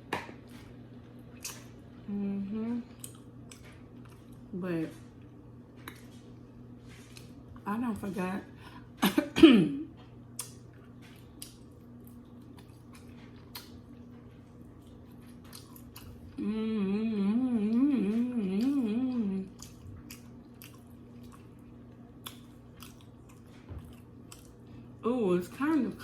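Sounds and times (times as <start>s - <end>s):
person chewing food: 0.3s - 1.9s, 2.9s - 4.5s, 10.0s - 16.4s, 17.8s - 25.0s
woman humming: 2.1s - 2.9s, 16.3s - 19.6s.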